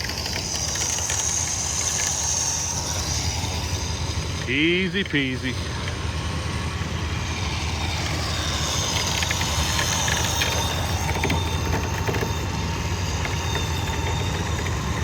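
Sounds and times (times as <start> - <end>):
vehicle engine idling: 0.0 - 15.0
faint clicks: 8.8 - 12.5.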